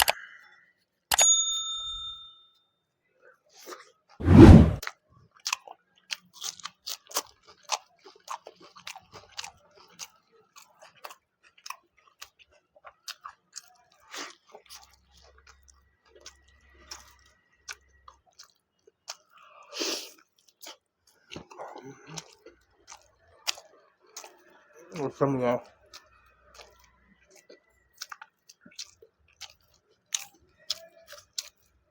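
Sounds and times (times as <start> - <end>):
person chewing and biting: 5.4 - 24.4, 25.9 - 31.7.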